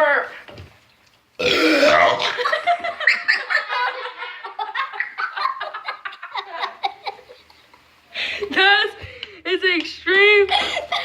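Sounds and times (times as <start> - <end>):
loud burp: 1.4 - 2.5
people giggling and snickering: 2.3 - 7.9.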